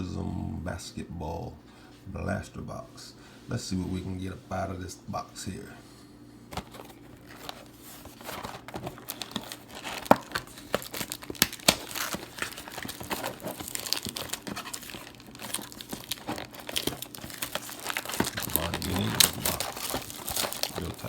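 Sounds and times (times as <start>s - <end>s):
packaging crinkling and tearing: 6.5s - 21.0s.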